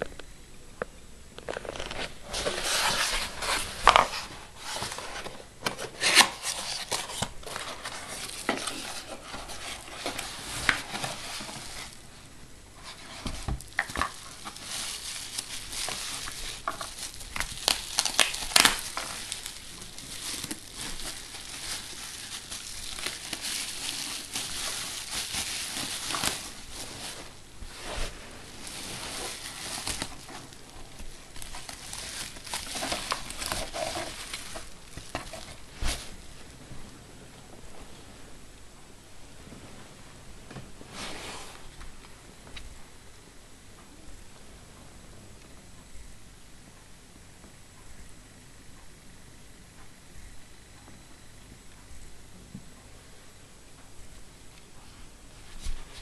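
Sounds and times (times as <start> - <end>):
plastic packaging crinkling: 1.4 - 12.2, 12.8 - 36.6.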